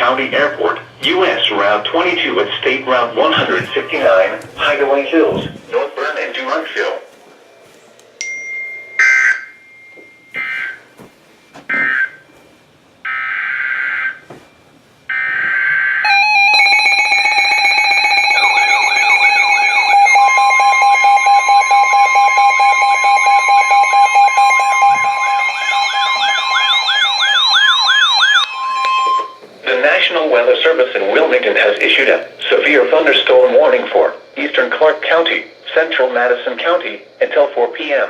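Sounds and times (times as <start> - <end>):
continuous alert tone: 16.1 - 37.5.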